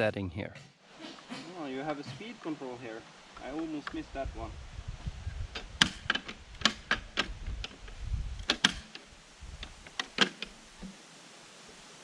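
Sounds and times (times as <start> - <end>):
plastic control clicks and knocks: 5.5 - 9.0, 9.6 - 10.5.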